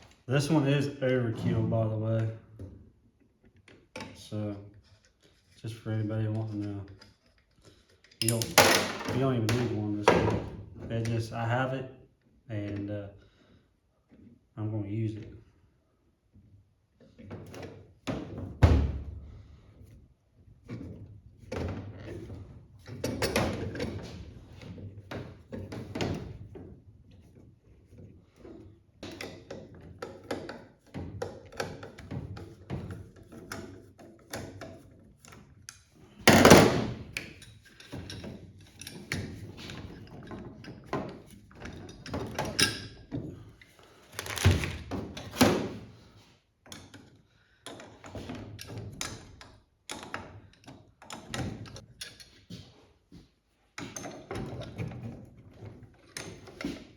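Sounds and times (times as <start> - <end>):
metal parts and tools clanking: 8.0 - 9.8.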